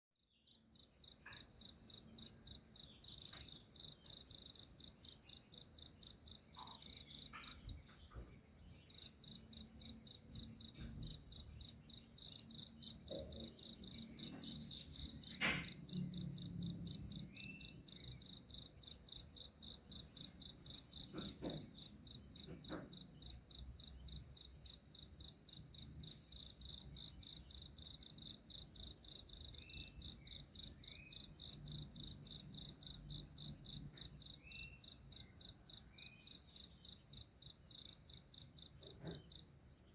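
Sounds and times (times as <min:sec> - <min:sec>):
cricket chirping: 0:00.2 - 0:39.9
sharp click: 0:15.3 - 0:15.8.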